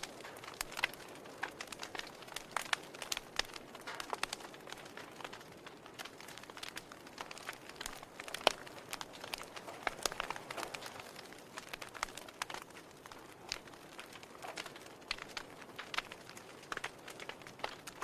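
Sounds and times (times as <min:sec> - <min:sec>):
wood fire crackling: 0:00.0 - 0:18.0.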